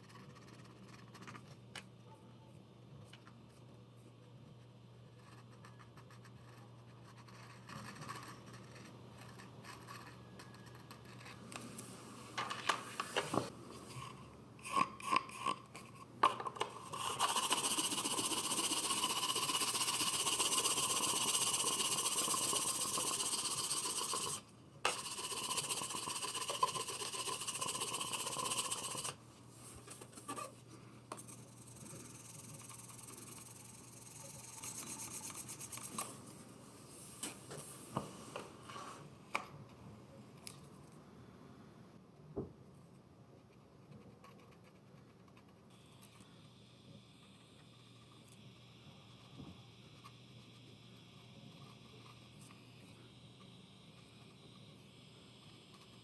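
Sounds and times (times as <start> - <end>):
scratches and scrapes on tile: 0.0 - 1.6, 5.1 - 39.1
steady mechanical noise: 7.2 - 29.2.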